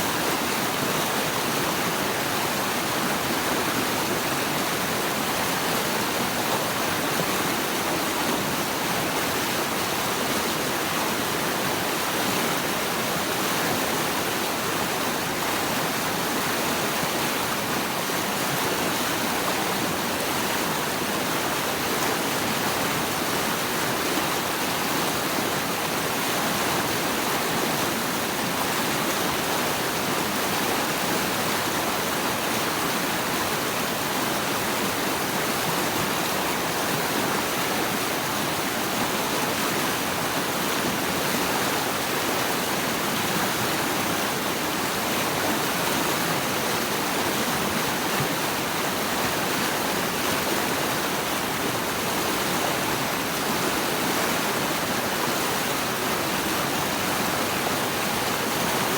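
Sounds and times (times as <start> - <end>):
flowing water rushing: 0.0 - 58.9.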